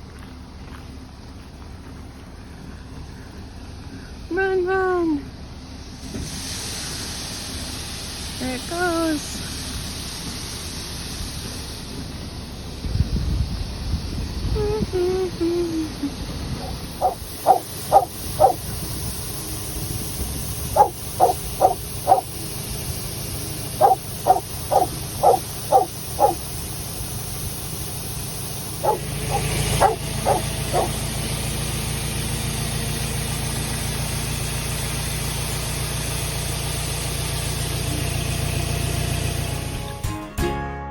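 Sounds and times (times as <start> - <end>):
farm engine running: 0.0 - 40.9
dog barking: 16.6 - 18.6, 20.8 - 22.3, 23.8 - 26.4, 28.8 - 31.0.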